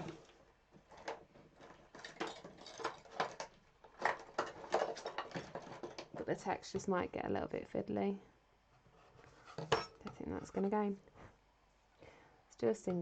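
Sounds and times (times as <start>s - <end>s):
craft materials tapping and rustling: 0.0s - 6.8s.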